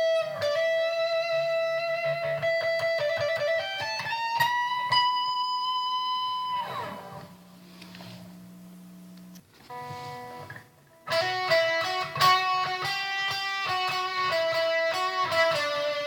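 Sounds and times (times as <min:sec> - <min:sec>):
electric guitar solo: 0:00.0 - 0:07.4, 0:09.7 - 0:16.0
faint low hum: 0:06.0 - 0:11.0.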